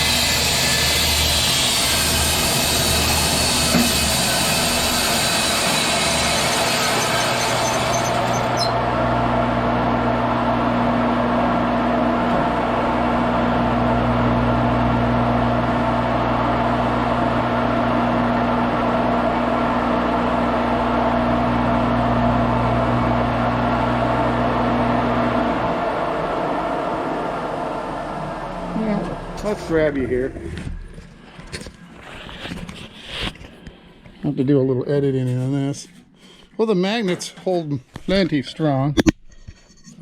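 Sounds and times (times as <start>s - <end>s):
bandsaw mill running: 0.0s - 31.7s.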